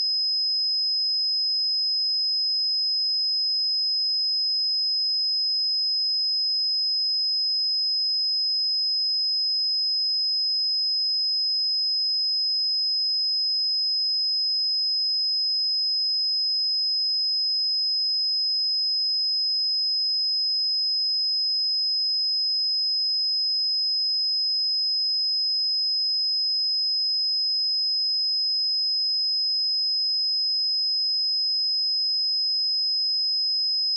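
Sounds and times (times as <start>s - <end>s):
high sine-wave test tone: 33.6s - 33.9s.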